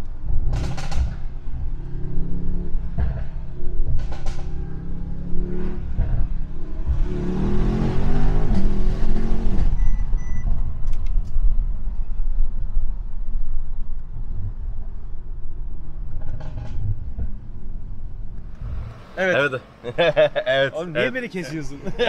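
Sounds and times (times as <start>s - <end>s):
road noise: 0.0s - 22.0s
car engine accelerating hard: 0.2s - 10.0s, 18.3s - 20.3s
short electronic beeps: 9.7s - 10.5s.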